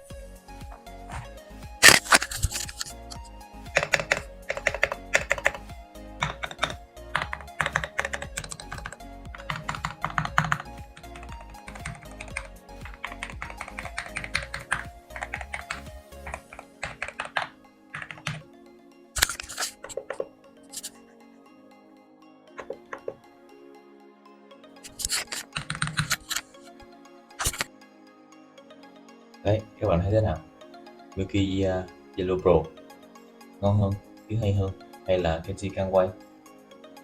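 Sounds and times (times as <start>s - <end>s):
typing on mechanical keyboard: 3.7s - 5.6s, 6.2s - 18.4s, 24.9s - 26.6s.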